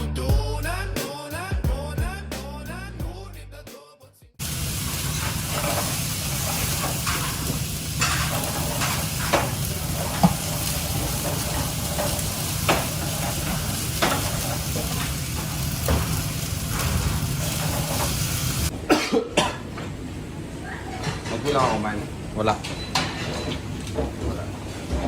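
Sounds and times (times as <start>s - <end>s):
food sizzling in a pan: 4.4s - 18.7s.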